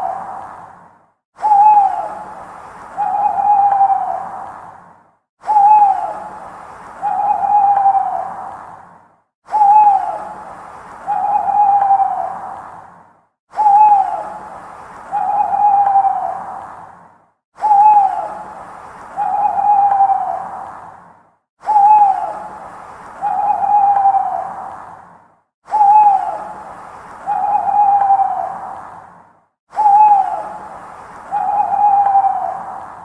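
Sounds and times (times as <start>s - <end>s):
owl hooting: 0.0s - 0.6s, 1.4s - 4.6s, 5.4s - 8.6s, 9.5s - 12.6s, 13.6s - 14.5s, 15.1s - 16.7s, 17.6s - 20.8s, 21.6s - 24.7s, 25.7s - 28.8s, 29.7s - 33.0s.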